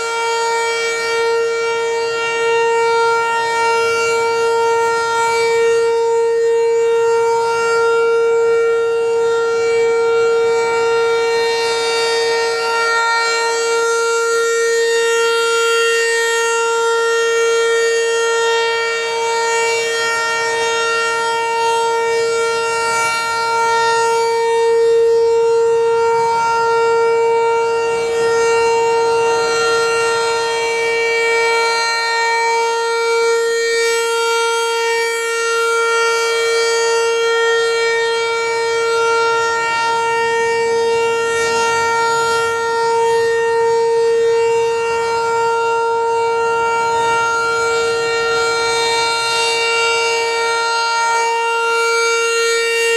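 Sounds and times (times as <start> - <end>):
outdoor warning siren steady tone: 0.0 - 52.9.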